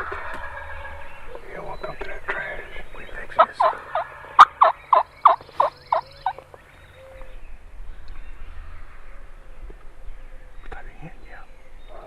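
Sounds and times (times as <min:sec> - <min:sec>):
turkey yelps: 0:03.4 - 0:07.2.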